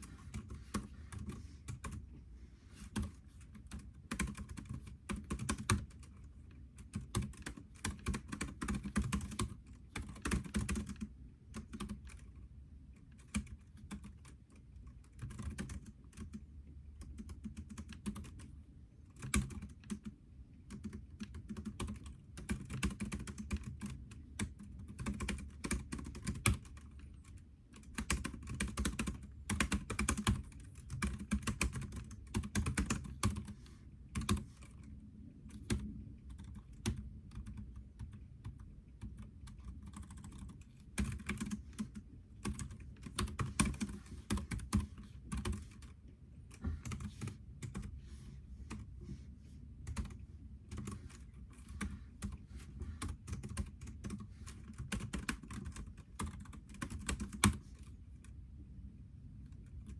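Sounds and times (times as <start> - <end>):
keyboard typing clicks: 2.9 - 6.2, 6.8 - 12.2, 19.2 - 20.1, 20.7 - 34.9, 35.5 - 46.0, 53.0 - 57.6.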